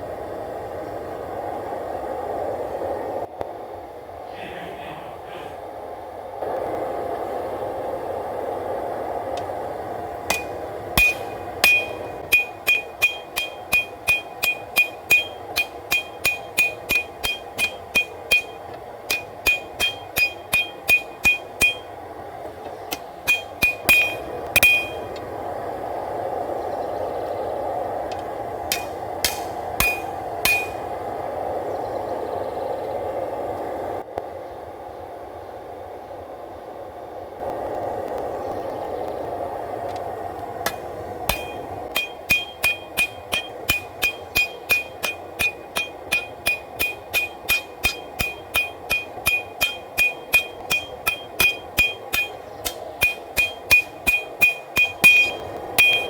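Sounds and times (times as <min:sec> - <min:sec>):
forge rushing noise: 0:04.2 - 0:26.6, 0:27.8 - 0:31.6, 0:39.6 - 0:56.0
hammer ringing on anvil: 0:10.3 - 0:22.0, 0:22.9 - 0:25.2, 0:28.7 - 0:30.9, 0:40.7 - 0:56.0.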